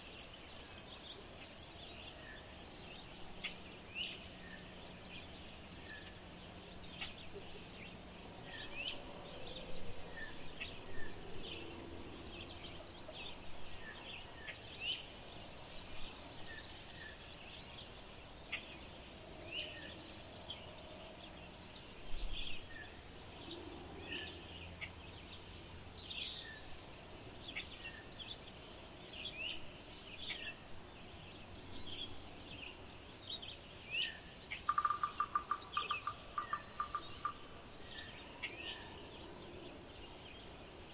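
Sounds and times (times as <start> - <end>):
small birds chirping: 0.0 - 40.9.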